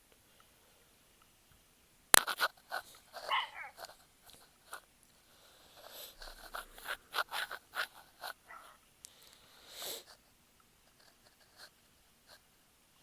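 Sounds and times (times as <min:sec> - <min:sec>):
dog whimpering: 0:03.2 - 0:03.9, 0:08.4 - 0:08.8.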